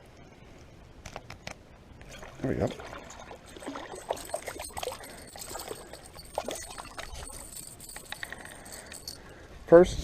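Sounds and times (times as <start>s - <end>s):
water splashing and gurgling: 2.0s - 7.8s.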